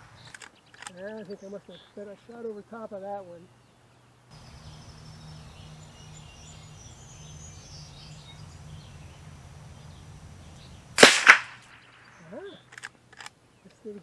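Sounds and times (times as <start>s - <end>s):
faint birdsong: 0.0s - 14.0s
low background hum: 3.6s - 11.3s
insects: 4.3s - 12.9s
sharp crack: 10.0s - 12.1s
rifle shot: 11.0s - 12.0s.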